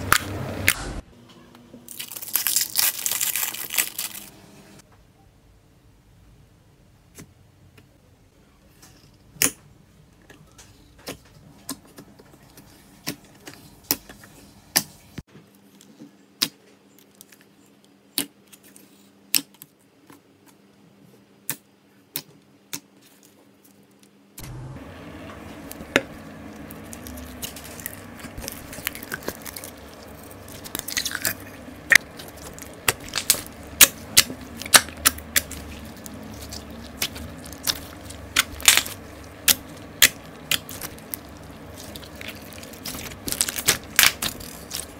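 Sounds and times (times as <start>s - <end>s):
background noise: 4.8s - 11.9s
slime clicking and popping: 30.4s - 44.9s.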